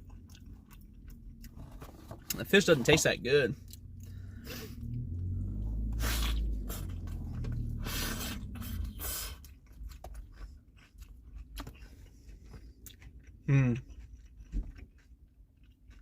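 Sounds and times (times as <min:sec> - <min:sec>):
person chewing food: 0:00.0 - 0:02.4, 0:03.6 - 0:16.0
low rumble: 0:03.5 - 0:10.0.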